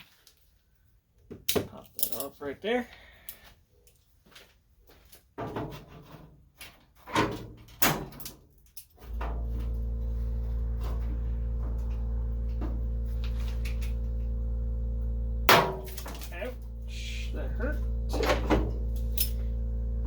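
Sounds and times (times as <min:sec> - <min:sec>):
steady low hum: 0:09.0 - 0:20.0.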